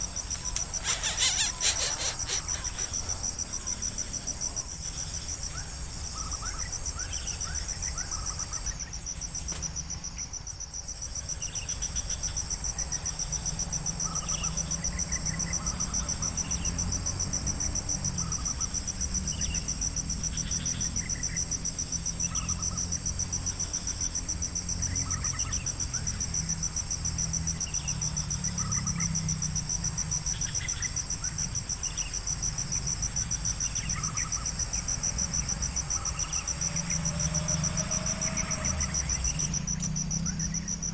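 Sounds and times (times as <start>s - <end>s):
short chirps: 0.0s - 10.3s
insects trilling: 0.0s - 40.9s.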